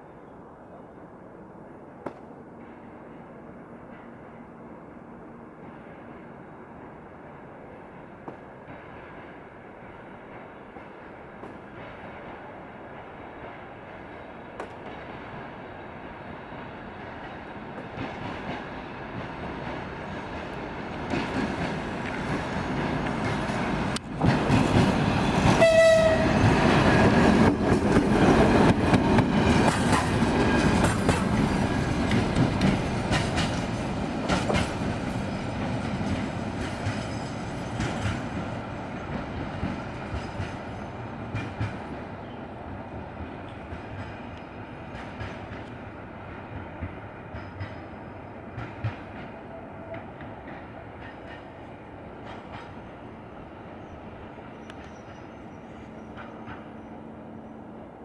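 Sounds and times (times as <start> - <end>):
diesel locomotive engine: 0.0 - 58.0
locomotive horn blast: 25.5 - 26.8.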